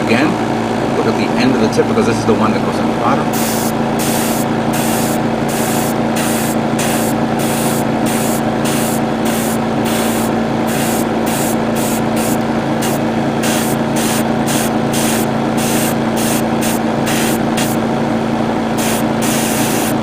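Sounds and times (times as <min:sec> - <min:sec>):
air compressor hum: 0:00.0 - 0:20.0
airbrush spraying hiss: 0:03.3 - 0:17.8, 0:18.8 - 0:20.0.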